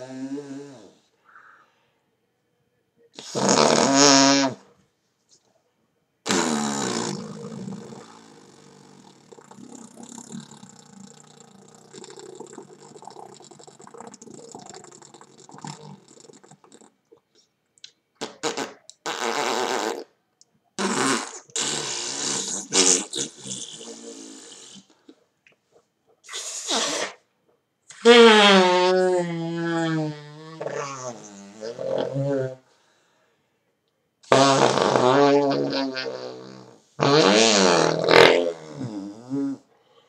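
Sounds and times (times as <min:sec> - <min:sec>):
person making fart sounds: 0:03.2 - 0:04.6, 0:06.2 - 0:17.2, 0:18.2 - 0:20.2, 0:20.8 - 0:24.9, 0:26.2 - 0:27.3, 0:27.9 - 0:32.6, 0:34.2 - 0:39.6.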